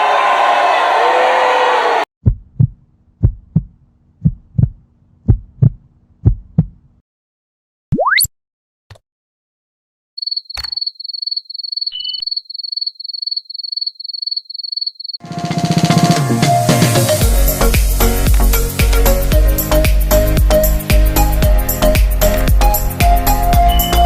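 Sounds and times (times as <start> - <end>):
heartbeat thumps: 2.2 - 6.8
rising whistle: 12.0 - 12.3, 21.2 - 24.0
high electronic beeping: 12.0 - 12.4.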